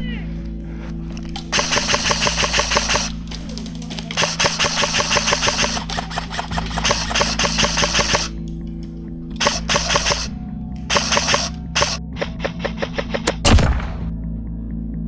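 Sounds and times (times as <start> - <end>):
airsoft rifle firing bursts: 1.4 - 8.4, 9.4 - 14.1.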